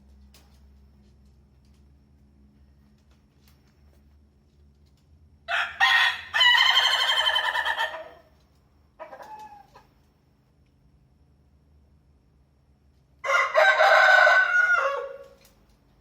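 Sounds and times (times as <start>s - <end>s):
rooster crowing: 5.4s - 8.3s, 13.2s - 15.4s
fainter rooster call: 5.5s - 8.3s, 13.2s - 15.4s.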